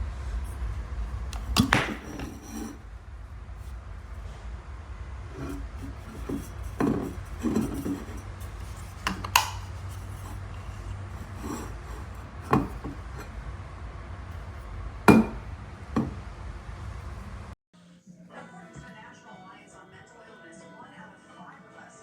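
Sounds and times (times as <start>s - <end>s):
low steady hum: 0.0s - 17.6s
bottle lid clicks and knocks: 1.4s - 2.7s, 8.8s - 10.4s, 15.1s - 15.4s
rubbing on water bottle: 5.3s - 13.3s.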